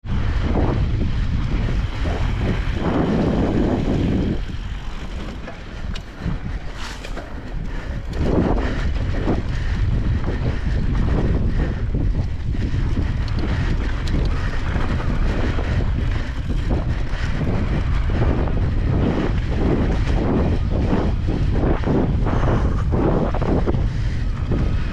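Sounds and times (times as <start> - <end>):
wind buffeting microphone: 0.0 - 24.9
tyres crunching on sandy trail: 2.2 - 8.6.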